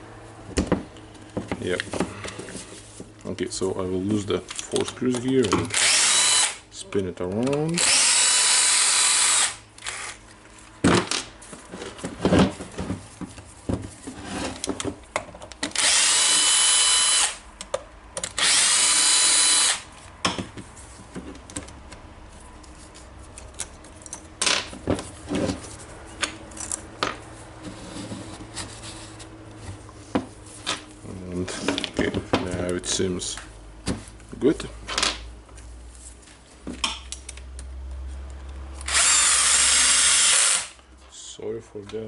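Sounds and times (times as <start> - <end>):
clicks and knocks of parts handled: 4.2 - 5.8, 6.9 - 7.8, 17.6 - 18.4, 20.0 - 27.7, 29.4 - 35.7, 36.6 - 38.9
electric screwdriver motor whine: 5.7 - 6.6, 7.8 - 10.2, 15.8 - 17.4, 18.4 - 19.8, 38.9 - 40.8.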